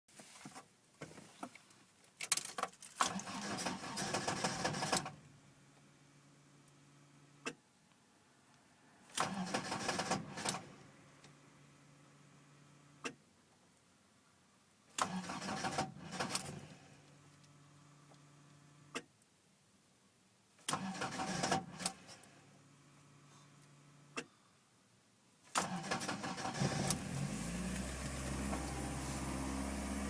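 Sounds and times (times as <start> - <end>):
engine starter cranking: 3.0 - 5.2, 9.1 - 10.8, 14.9 - 16.8, 20.6 - 22.3, 25.5 - 30.0.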